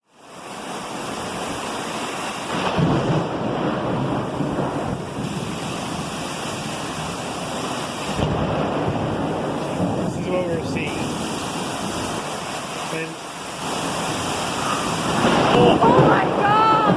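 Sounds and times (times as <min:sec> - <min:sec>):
heavy rain: 0:00.0 - 0:16.9
wind: 0:00.0 - 0:16.9
thunder rumbling: 0:01.1 - 0:16.9.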